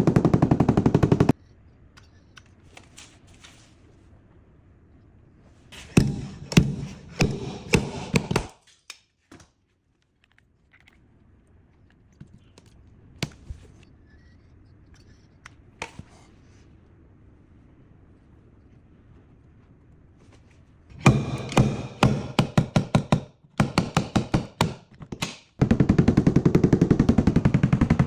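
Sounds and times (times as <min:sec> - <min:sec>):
dent repair tools tapping metal: 0:06.0 - 0:09.0, 0:21.0 - 0:25.4.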